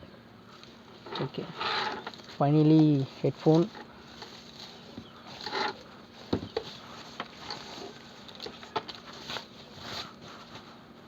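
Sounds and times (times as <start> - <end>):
small clicks and knocks: 5.0 - 9.1.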